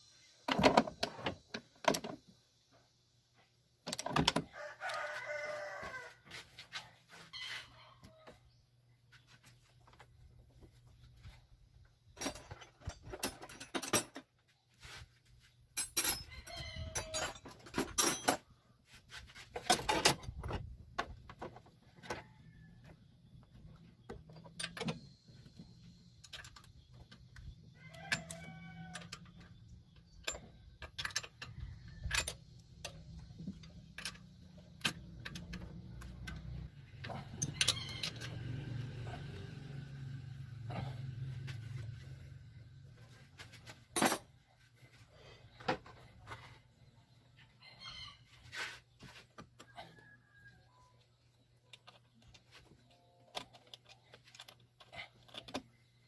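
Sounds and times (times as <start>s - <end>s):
hand tools clinking on metal: 15.7s - 18.5s.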